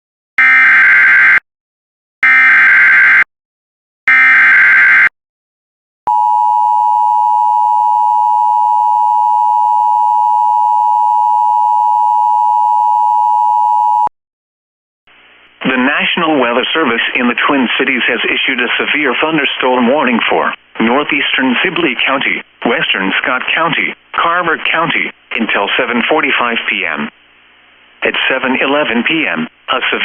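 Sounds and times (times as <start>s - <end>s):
steady attention tone: 6.1s - 14.1s.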